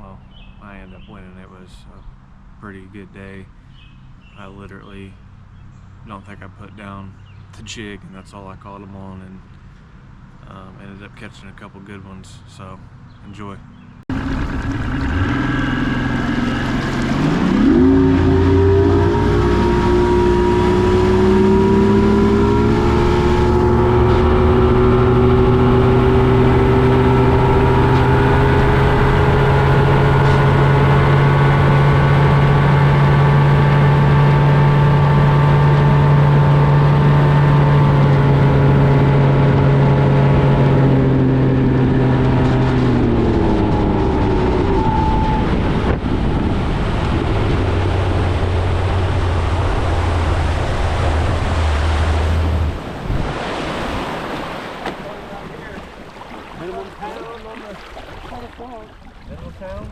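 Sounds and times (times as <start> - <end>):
boat motor running: 14.1 - 59.9.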